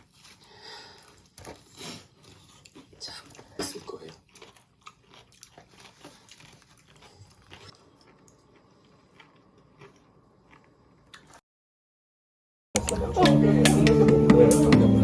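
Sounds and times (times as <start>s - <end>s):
person chewing food: 0.0s - 11.4s.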